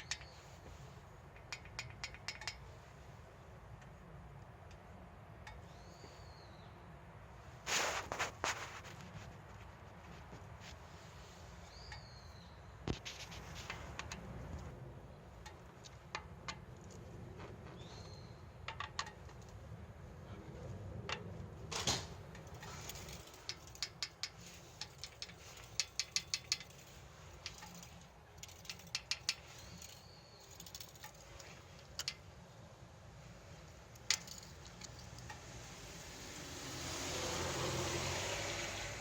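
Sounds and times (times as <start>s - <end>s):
metallic clicks and clinks: 0.0s - 0.4s, 1.2s - 2.9s, 21.1s - 32.3s, 33.8s - 35.6s
bird chirping: 5.5s - 6.9s, 11.6s - 12.8s, 17.7s - 18.6s, 28.8s - 31.0s.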